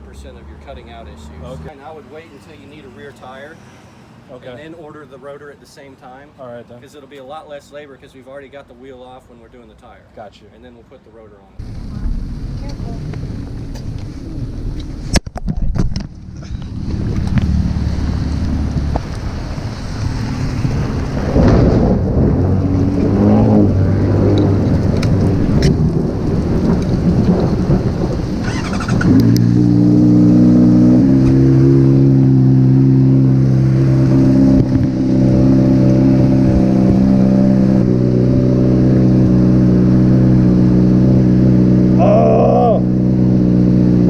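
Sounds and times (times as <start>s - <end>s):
rain: 11.6s - 15.2s, 16.3s - 37.3s
wind noise on microphone: 11.6s - 41.4s
motorcycle engine running: 20.8s - 44.0s.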